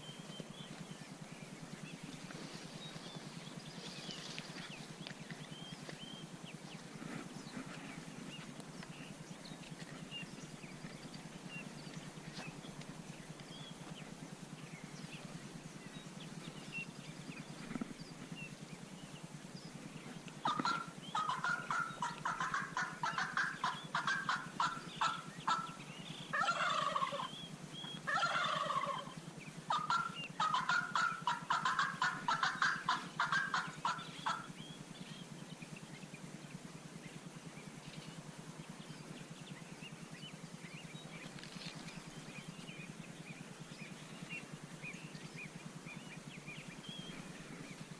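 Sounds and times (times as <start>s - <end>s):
wild turkeys gobbling: 20.0s - 34.8s
turkey falling calls: 20.4s - 27.3s, 28.0s - 34.5s.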